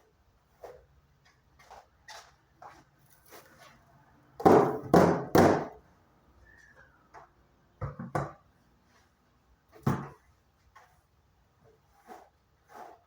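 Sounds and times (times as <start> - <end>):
knocks of household objects: 4.4 - 5.8.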